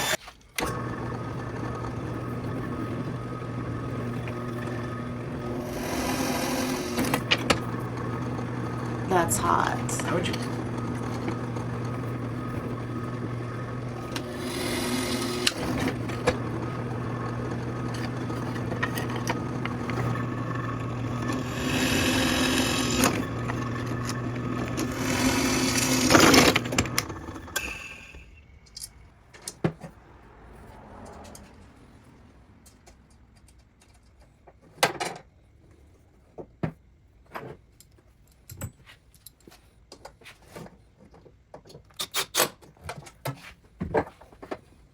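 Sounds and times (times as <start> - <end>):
power tool humming: 0.0 - 28.3.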